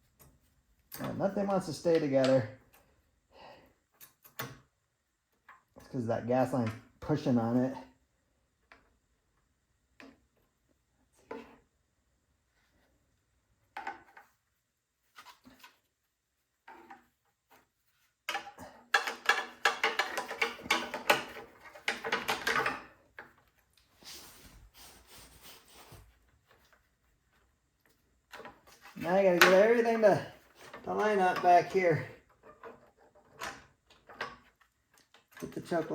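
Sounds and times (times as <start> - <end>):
clicks and knocks of parts handled: 16.6 - 24.0, 26.5 - 35.9.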